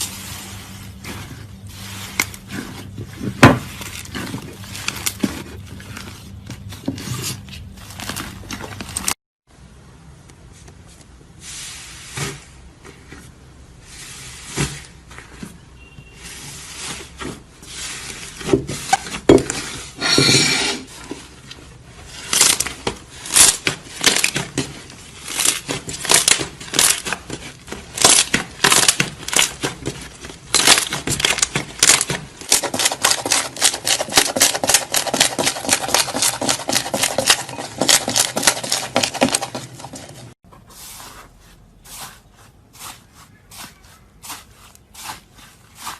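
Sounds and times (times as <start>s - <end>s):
crunchy slime crackling: 22.1s - 39.7s.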